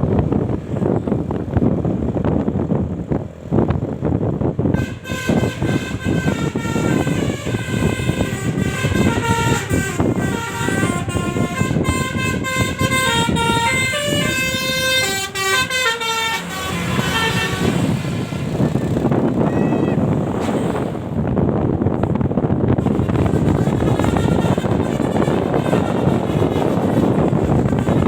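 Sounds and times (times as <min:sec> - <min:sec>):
low rumble of moving bus: 0:00.0 - 0:28.0
bus horn playing a tune: 0:04.6 - 0:20.4, 0:22.3 - 0:28.0.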